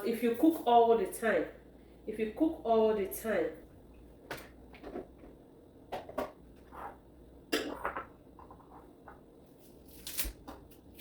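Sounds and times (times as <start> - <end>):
kitchen items knocking: 4.3 - 9.2.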